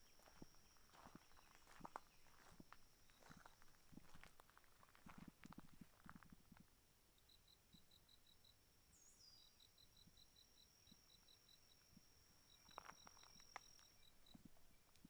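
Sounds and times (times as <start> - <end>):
high-pitched insect chirping: 0.0 - 3.8, 7.2 - 14.4
soft footsteps: 0.0 - 6.7.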